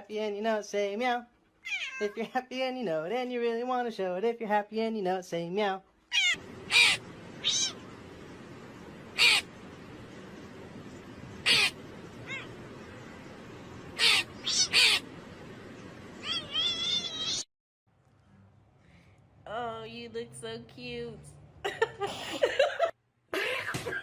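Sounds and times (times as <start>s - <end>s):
cat meowing: 1.6s - 2.2s, 6.1s - 7.8s, 9.2s - 9.4s, 11.4s - 12.6s, 14.0s - 15.0s, 16.2s - 17.4s
steady hiss: 6.4s - 16.8s.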